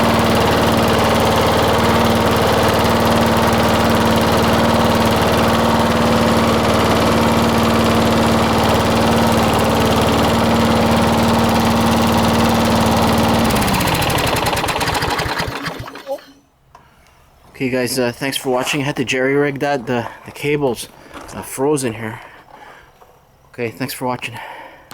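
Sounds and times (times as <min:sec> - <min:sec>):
lawn mower engine running: 0:00.0 - 0:16.4.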